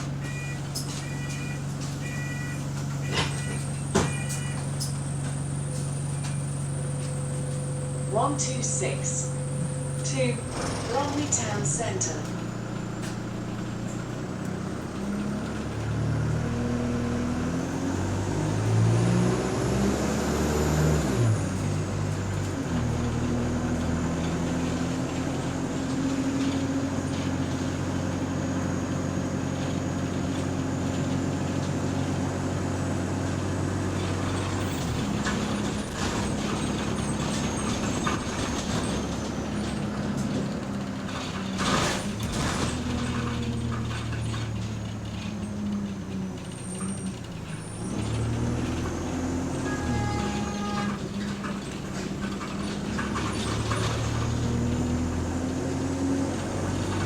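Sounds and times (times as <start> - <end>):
bus engine accelerating: 0.0 - 57.0
rattles clattering: 33.9 - 49.0, 50.4 - 55.6.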